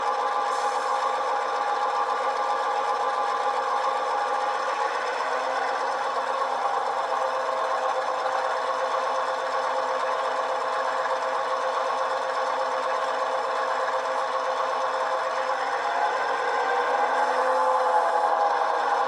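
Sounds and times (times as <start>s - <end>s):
model locomotive diesel engine sound: 0.0s - 19.0s.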